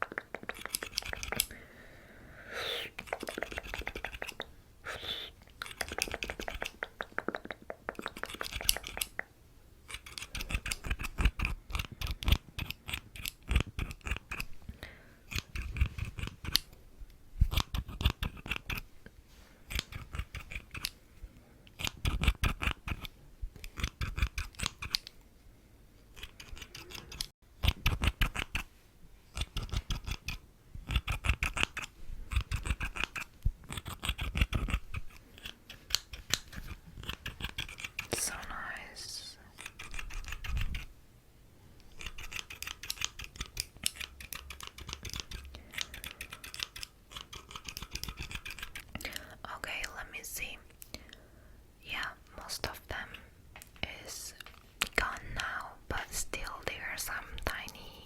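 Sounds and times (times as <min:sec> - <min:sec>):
scissors snipping: 0:00.0 - 0:01.5, 0:03.0 - 0:04.5, 0:05.5 - 0:14.6, 0:19.7 - 0:21.0, 0:21.7 - 0:25.1, 0:26.1 - 0:28.7, 0:29.3 - 0:38.3, 0:39.6 - 0:40.9, 0:41.8 - 0:49.1.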